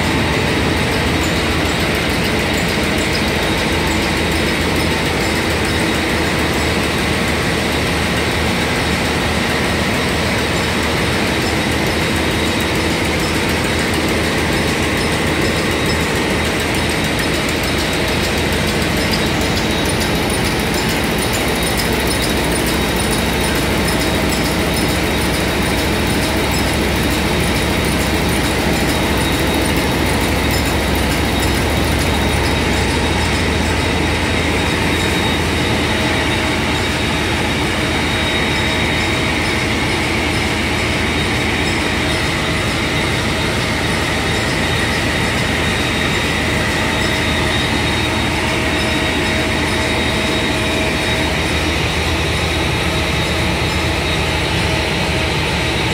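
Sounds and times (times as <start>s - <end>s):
diesel engine rumbling: 15.5s - 37.7s.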